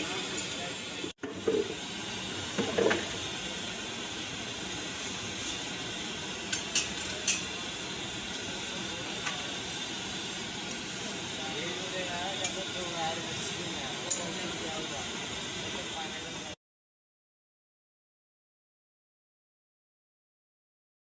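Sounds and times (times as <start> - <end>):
steady hissing noise: 0.0 - 16.6.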